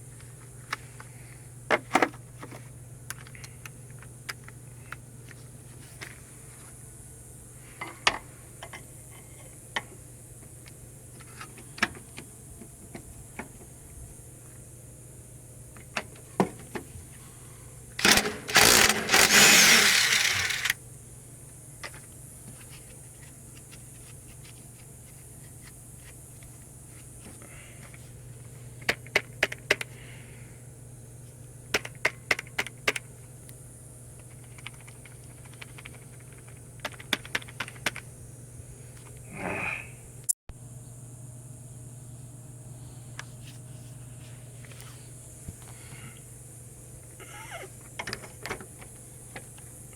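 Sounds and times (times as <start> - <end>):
steady low hum: 0.0 - 49.9
hand tools clicking and clinking: 18.0 - 20.8
power tool running: 18.0 - 20.8.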